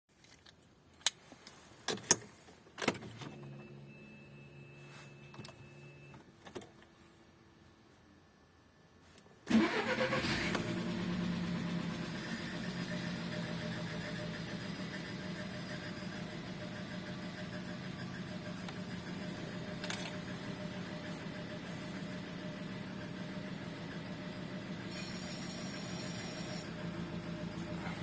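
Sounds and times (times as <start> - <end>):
car engine starting and idling: 9.4 - 28.0.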